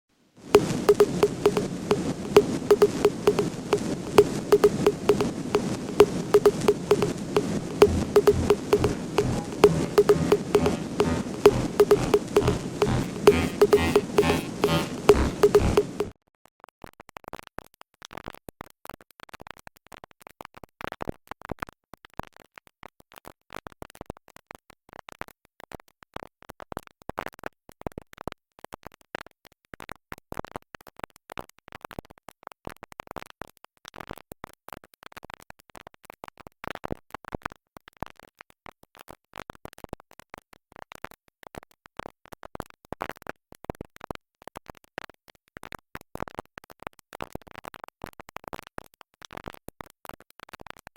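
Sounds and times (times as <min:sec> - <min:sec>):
vinyl record crackle: 0:00.6 - 0:09.9.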